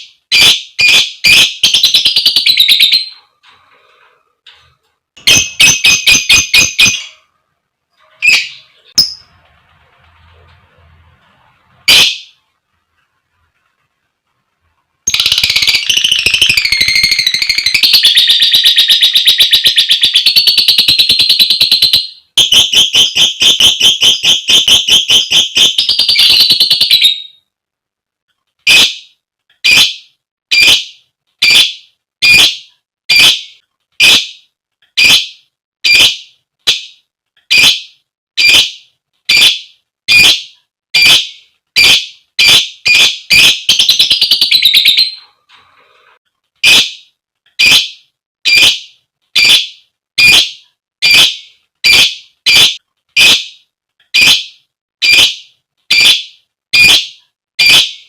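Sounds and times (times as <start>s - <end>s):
sharp piercing bird calls: 0.3s - 3.2s, 5.2s - 7.2s, 15.1s - 27.4s, 28.7s - 45.4s, 46.6s - 58.0s.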